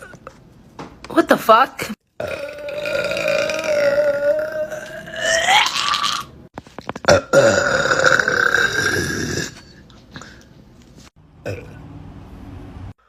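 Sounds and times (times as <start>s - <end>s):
woman burping: 2.2s - 6.3s, 7.0s - 9.8s, 11.4s - 11.8s.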